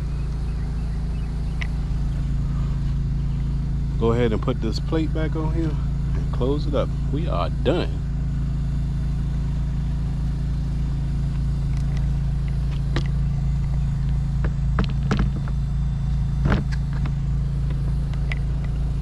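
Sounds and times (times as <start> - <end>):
low engine hum: 0.0 - 19.0
sharp clicks and knocks: 11.7 - 15.6, 16.4 - 18.8.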